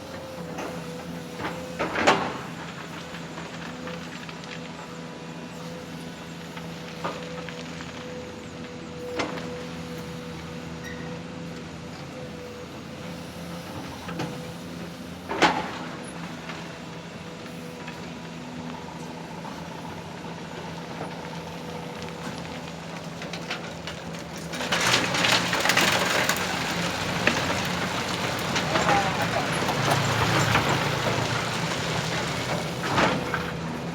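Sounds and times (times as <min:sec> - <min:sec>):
construction machinery humming: 0:00.0 - 0:33.9.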